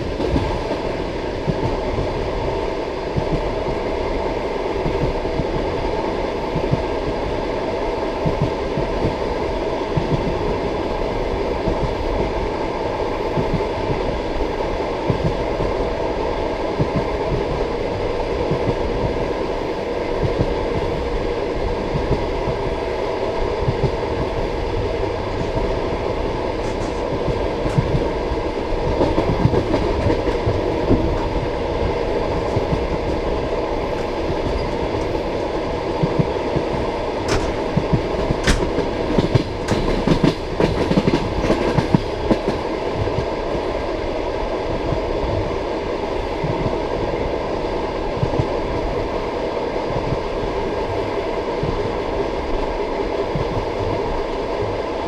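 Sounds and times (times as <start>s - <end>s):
train wheels rumbling on rail: 0.0s - 55.0s
wheels clattering over rail joints: 26.5s - 28.2s, 32.1s - 35.9s, 37.2s - 41.6s
sharp clicks: 37.3s - 40.3s.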